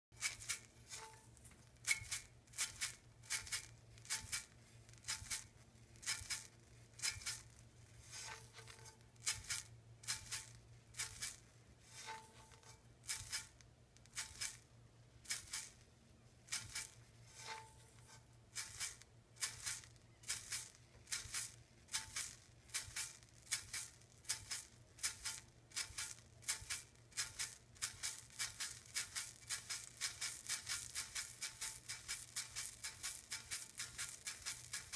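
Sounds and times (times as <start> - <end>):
shaker rattling in rhythm: 0.2 - 14.6, 18.5 - 34.9.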